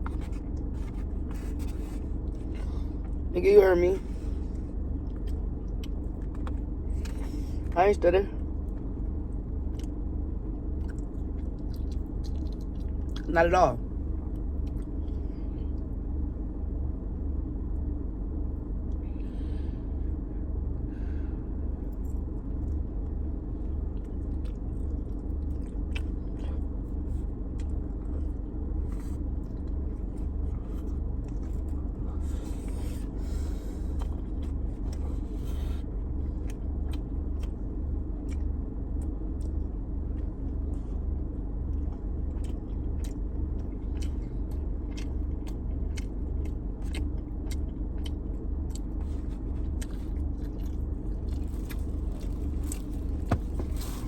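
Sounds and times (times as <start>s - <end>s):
person chewing food: 0.0s - 3.3s, 4.1s - 7.8s, 10.7s - 13.3s, 23.7s - 54.0s
low rumble: 0.0s - 54.0s.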